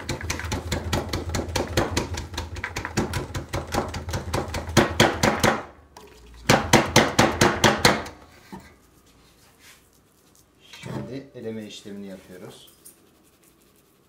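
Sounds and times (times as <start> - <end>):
plastic sieve shaken and knocked: 0.0 - 4.8.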